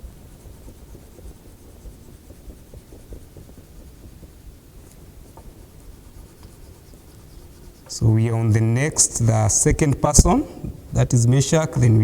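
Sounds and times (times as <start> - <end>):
scribbling on paper: 0.0 - 8.0.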